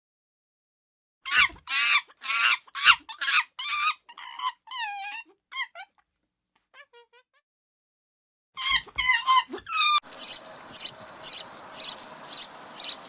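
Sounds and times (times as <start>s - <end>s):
high-pitched animal calls: 1.3s - 5.9s, 8.6s - 13.0s
faint chirps: 10.1s - 13.0s.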